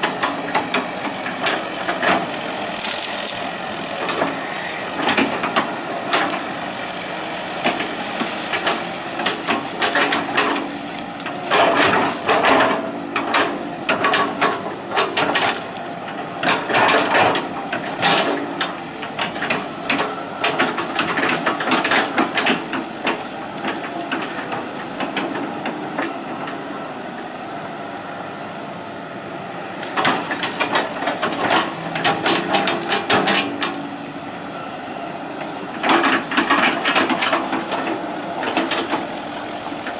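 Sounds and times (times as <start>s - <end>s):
diesel engine running: 0.0s - 39.9s
metallic clanks and rattles: 11.4s - 15.6s, 30.0s - 33.8s.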